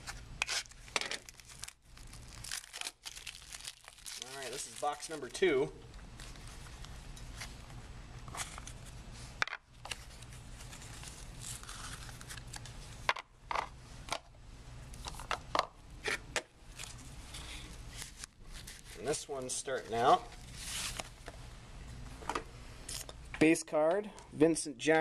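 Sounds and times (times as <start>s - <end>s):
packaging rustling: 0.1s - 5.4s, 9.8s - 12.8s.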